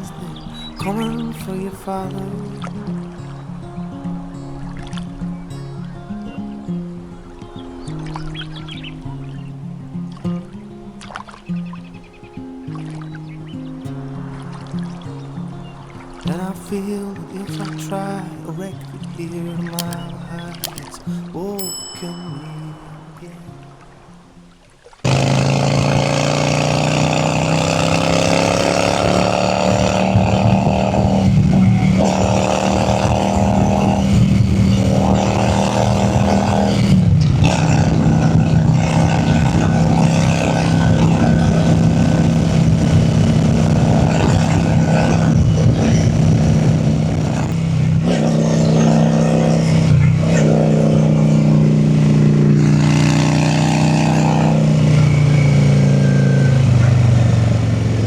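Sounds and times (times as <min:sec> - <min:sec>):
motorcycle engine shifting gears: 0:25.0 - 0:58.0.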